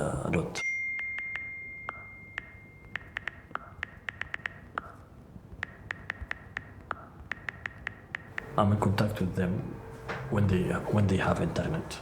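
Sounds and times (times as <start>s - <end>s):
high ping tone: 0.6s - 3.2s
sharp ringing ticks: 0.6s - 4.9s.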